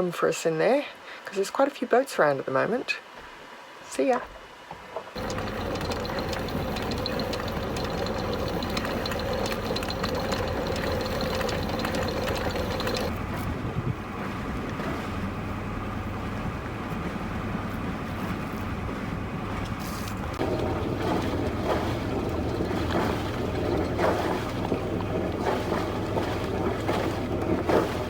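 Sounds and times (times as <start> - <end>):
wind: 0.0 - 28.0
higher hum: 5.2 - 13.1
water noise: 5.2 - 18.1, 18.8 - 28.0
boat engine running: 5.2 - 28.0.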